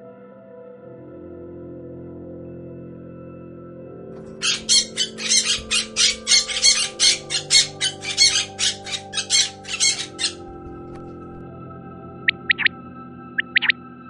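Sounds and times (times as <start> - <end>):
bird squawking harshly: 4.3 - 11.4.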